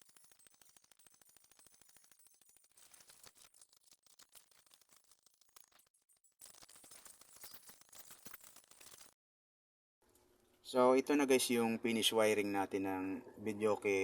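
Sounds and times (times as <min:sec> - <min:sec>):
faint rapid clicking and crackle: 0:00.0 - 0:09.2.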